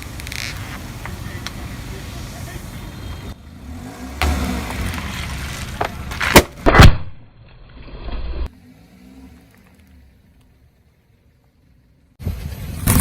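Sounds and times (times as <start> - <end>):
car tyre crushing object: 4.2 - 8.5
loud sharp cracks: 6.2 - 7.2.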